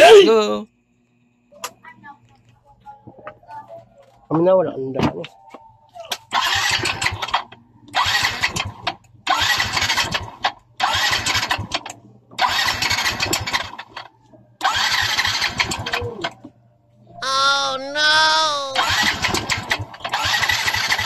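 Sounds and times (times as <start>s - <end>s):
scooter engine revving: 6.3s - 14.0s, 14.6s - 16.3s, 18.8s - 21.0s.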